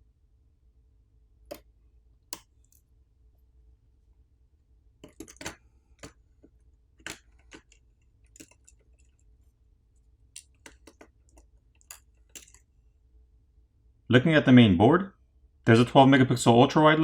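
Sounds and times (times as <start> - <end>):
phone parts and tools clicking: 5.0 - 9.3, 10.3 - 12.7.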